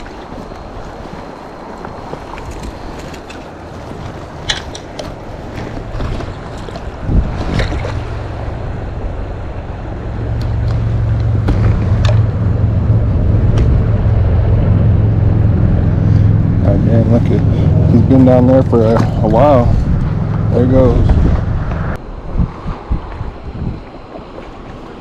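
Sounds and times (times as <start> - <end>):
rushing creek water: 0.0 - 14.7, 22.8 - 25.0
wind on microphone: 0.0 - 25.0
low vehicle engine hum: 4.8 - 22.0
sharp knocks: 11.4 - 12.3.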